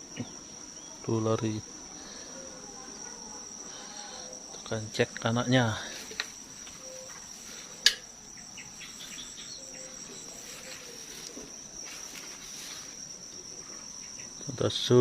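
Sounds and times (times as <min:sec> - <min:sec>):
insect chirring: 0:00.0 - 0:15.0.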